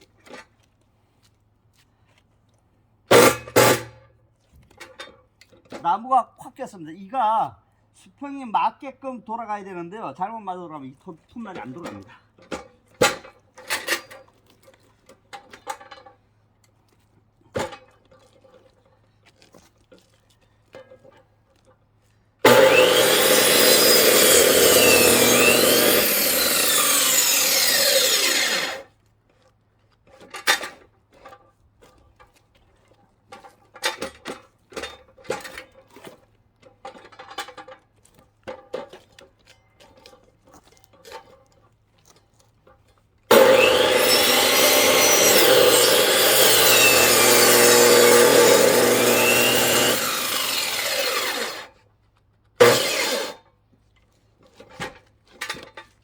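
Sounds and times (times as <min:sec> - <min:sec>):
power saw cutting log: 0:03.1 - 0:04.0, 0:11.4 - 0:12.1, 0:22.4 - 0:28.9, 0:43.3 - 0:51.8, 0:52.6 - 0:53.4.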